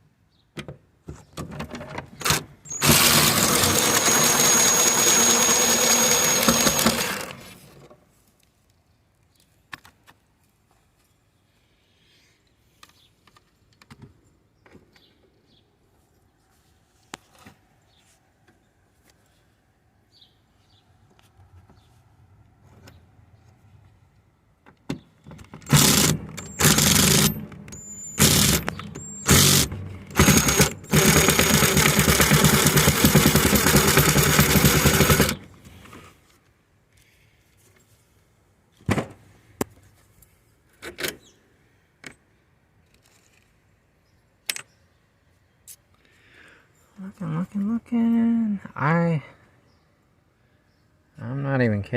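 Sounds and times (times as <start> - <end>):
cordless drill running: 2.2 - 7.6, 25.6 - 35.5.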